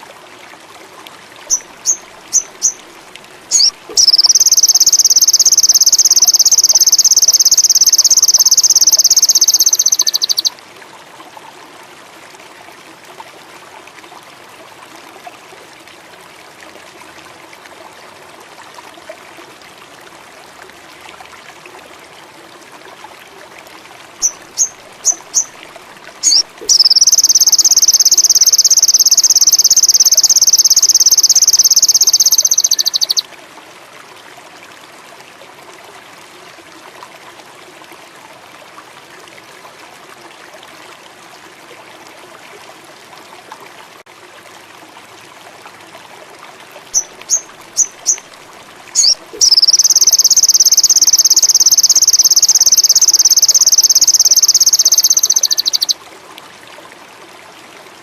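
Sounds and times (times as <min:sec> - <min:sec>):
faint steady hiss: 0:00.0 - 0:58.0
songbird chirps and trill: 0:01.5 - 0:02.8, 0:03.5 - 0:10.5, 0:24.2 - 0:25.5, 0:26.2 - 0:33.2, 0:47.0 - 0:48.2, 0:49.0 - 0:56.0.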